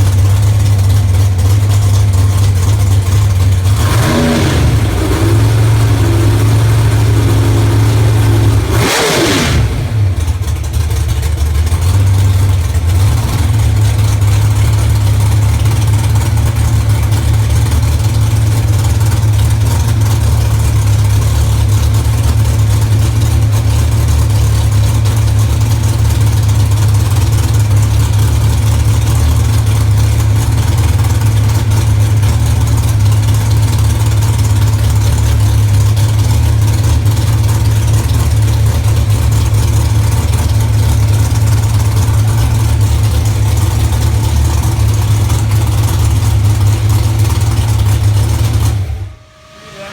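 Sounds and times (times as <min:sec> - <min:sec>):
loud engine idling: 0:00.0 - 0:49.9
brief burst of noise: 0:48.9 - 0:49.9.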